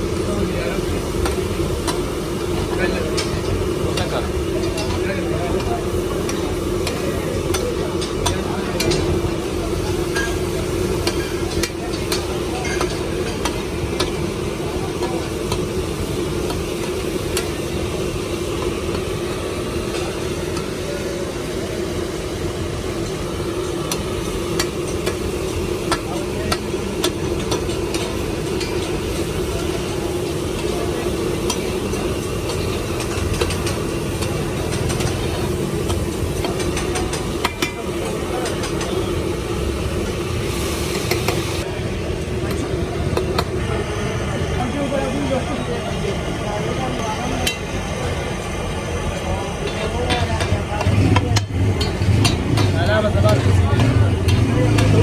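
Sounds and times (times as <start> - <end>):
liver frying in a pan: 0.0 - 41.7.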